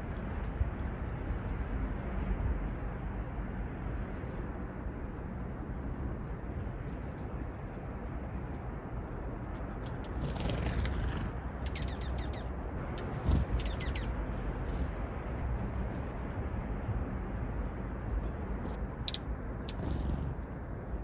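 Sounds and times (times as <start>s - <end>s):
birds giving high-pitched chirps: 9.7s - 17.0s, 17.8s - 20.6s.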